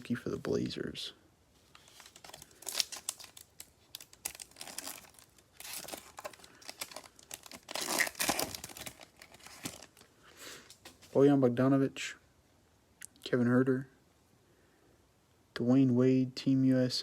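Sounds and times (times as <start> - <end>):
card packs crinkling: 1.6 - 10.1.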